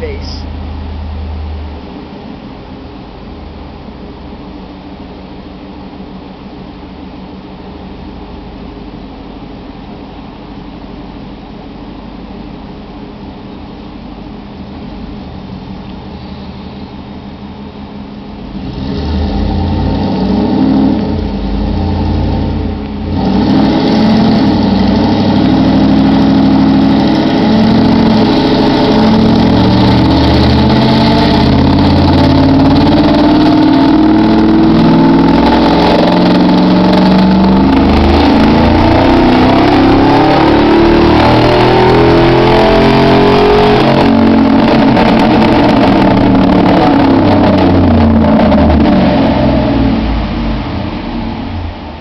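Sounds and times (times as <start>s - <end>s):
engine revving at full throttle: 18.5s - 52.0s.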